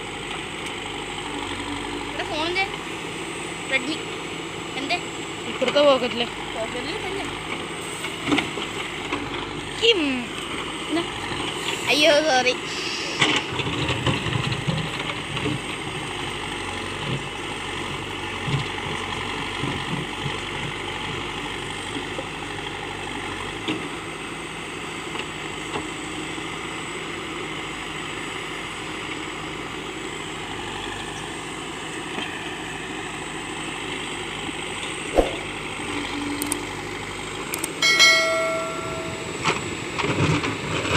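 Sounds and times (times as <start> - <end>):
short pitched beep: 37.8 - 39.6.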